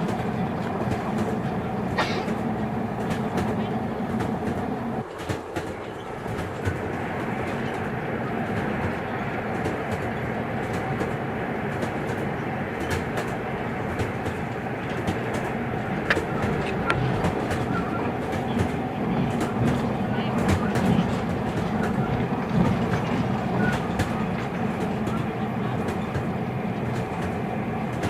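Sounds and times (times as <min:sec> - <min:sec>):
train wheels rumbling on rails: 0:00.0 - 0:28.0
faint clicks and knocks: 0:12.8 - 0:25.2.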